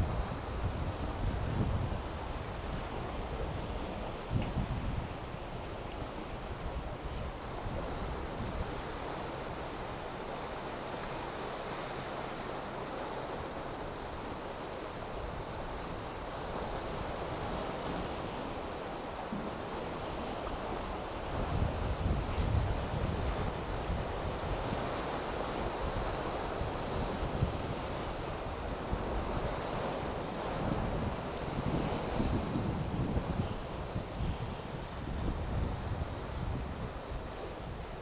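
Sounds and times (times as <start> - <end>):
wind rumbling on microphone: 0.0 - 9.1, 19.4 - 38.0
rough sea waves breaking: 0.0 - 38.0.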